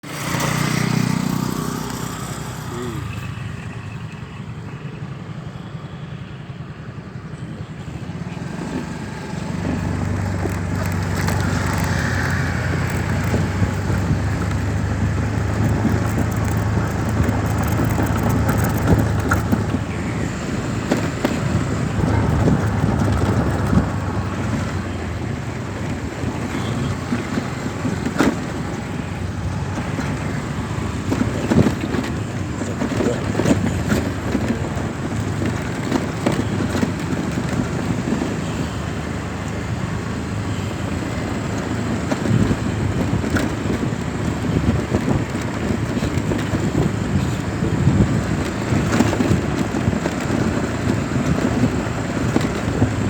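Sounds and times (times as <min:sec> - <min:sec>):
knocks and handling noise: 0:09.7 - 0:24.9.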